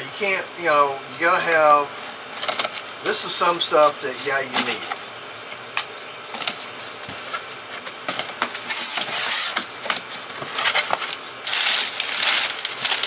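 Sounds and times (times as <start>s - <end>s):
packaging rustling and tearing: 8.1s - 13.0s.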